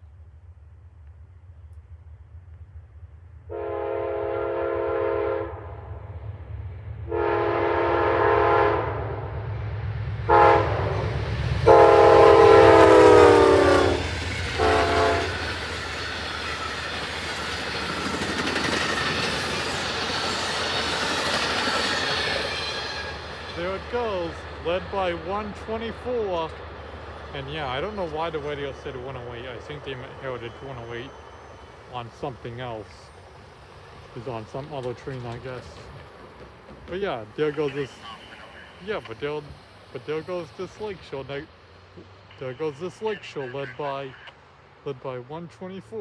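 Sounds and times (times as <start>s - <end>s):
locomotive horn: 3.5s - 5.8s, 7.1s - 9.2s, 10.3s - 15.5s
train cars clattering on rails: 11.7s - 31.2s, 31.9s - 39.5s.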